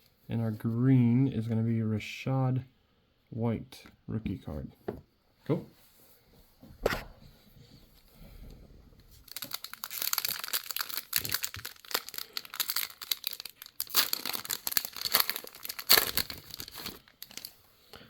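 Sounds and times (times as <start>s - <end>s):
plastic wrapper tearing and crinkling: 9.1s - 17.6s.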